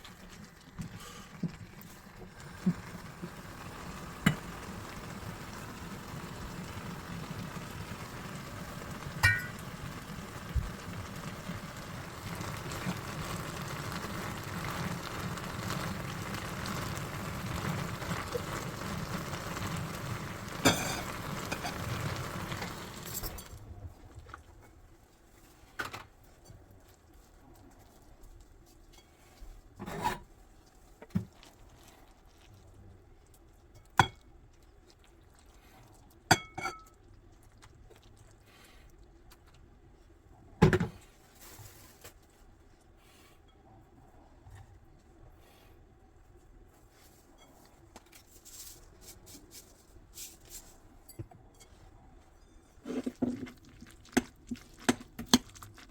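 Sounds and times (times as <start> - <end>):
dishes and utensils clinking: 9.2 - 9.6, 20.6 - 21.9.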